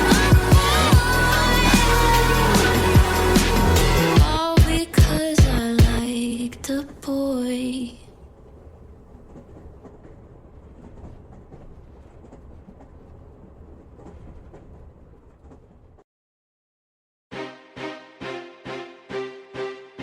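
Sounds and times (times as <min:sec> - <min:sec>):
low rumbling noise: 0:00.0 - 0:16.0.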